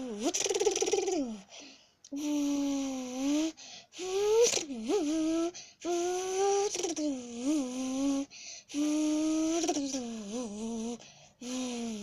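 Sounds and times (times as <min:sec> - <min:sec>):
person imitating car engine: 0:00.0 - 0:01.5, 0:02.1 - 0:12.0
quick breaths: 0:08.3 - 0:08.8.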